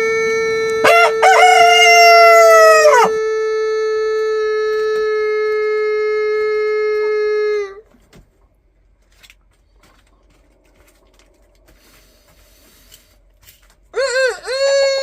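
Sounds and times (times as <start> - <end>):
rooster crowing: 0.8 - 3.4, 13.9 - 15.0.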